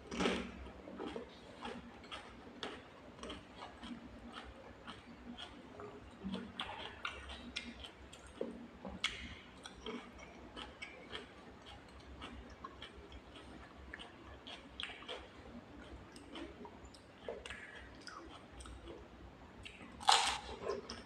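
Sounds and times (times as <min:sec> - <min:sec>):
food crunch: 0:00.0 - 0:05.6, 0:19.6 - 0:21.0
wet chewing clicks and smacks: 0:00.0 - 0:21.0.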